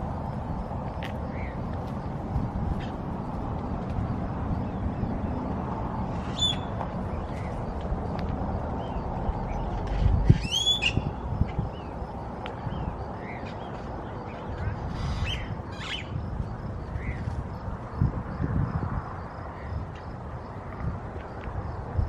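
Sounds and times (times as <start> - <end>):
steady low rumble: 0.0 - 22.0
birds squeaking and chirping: 1.2 - 1.6, 4.6 - 7.7, 8.6 - 17.4.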